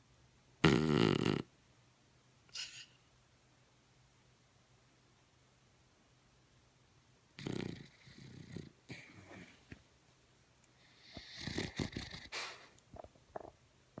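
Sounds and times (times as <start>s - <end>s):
raspy snoring: 0.6s - 1.5s, 7.4s - 9.4s, 10.9s - 12.4s.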